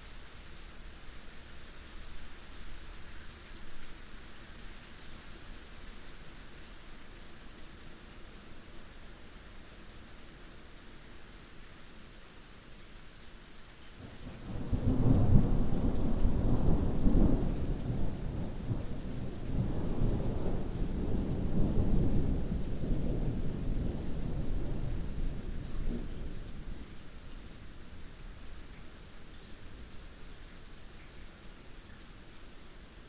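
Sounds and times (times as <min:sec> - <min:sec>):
steady rain: 0:00.0 - 0:33.0
thunder rumbling: 0:14.3 - 0:27.3.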